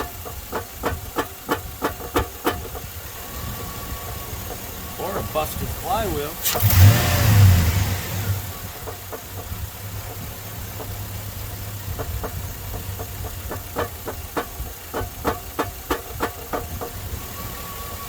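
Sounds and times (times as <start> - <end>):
sharp engine knock: 0.0 - 3.0, 8.4 - 17.1
car engine idling: 0.0 - 18.0.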